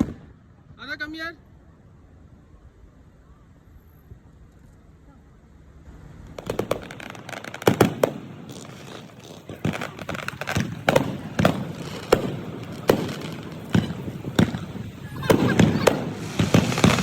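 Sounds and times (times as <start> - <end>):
crackling hiss: 0.0 - 17.0
firecrackers banging: 5.8 - 17.0.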